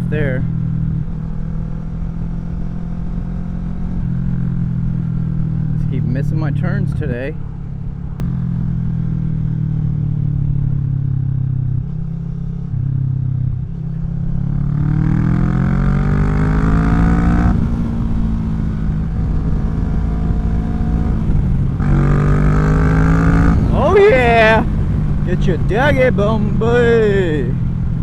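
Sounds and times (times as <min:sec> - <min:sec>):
motorcycle engine accelerating: 0:08.2 - 0:28.0.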